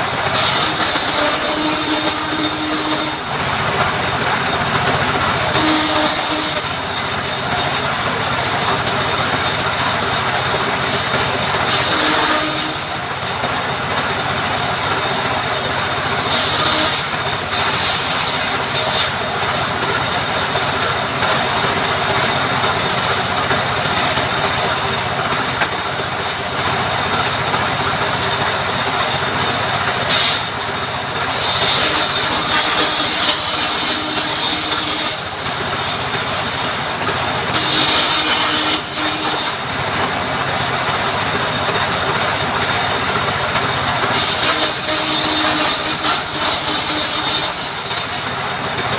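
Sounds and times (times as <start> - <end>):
power saw cutting wood: 0.0 - 25.8, 28.9 - 40.2, 44.0 - 48.9.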